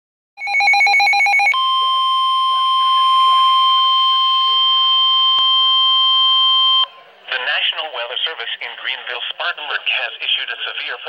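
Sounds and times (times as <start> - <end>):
steady high alarm tone: 0.4 - 7.0.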